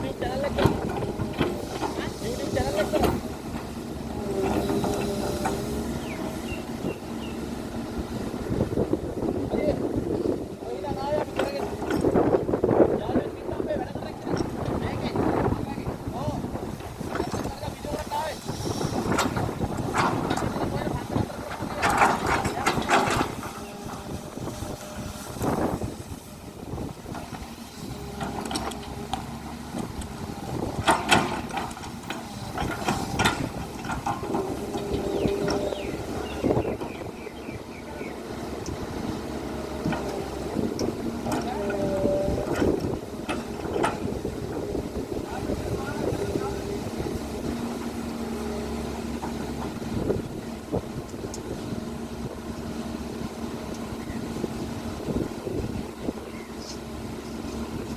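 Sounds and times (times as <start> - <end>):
excavator diesel engine running: 0.0 - 57.9
metallic clanks and knocks: 30.8 - 35.8.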